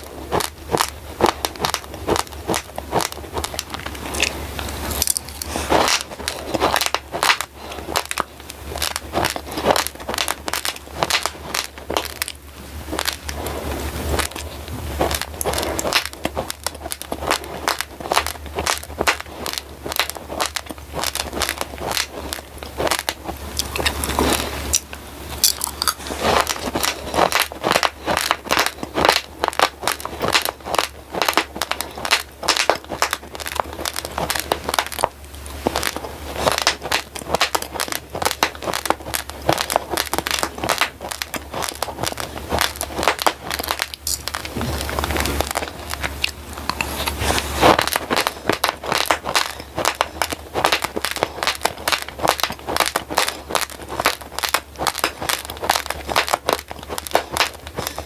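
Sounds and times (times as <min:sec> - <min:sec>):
low steady hum: 0:00.0 - 0:58.0
rice grains crunched and chewed: 0:00.0 - 0:58.0.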